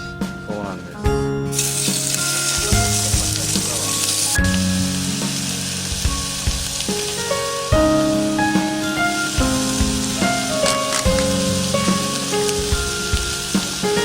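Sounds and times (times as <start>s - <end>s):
background music: 0.0s - 14.0s
food sizzling in a pan: 1.6s - 7.5s.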